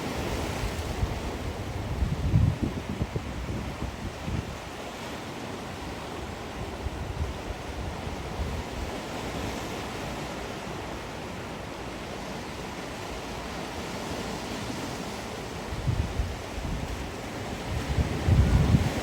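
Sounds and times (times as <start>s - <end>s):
sea waves washing onto shore: 0.0s - 19.0s
wind buffeting microphone: 0.2s - 4.7s, 15.6s - 19.0s.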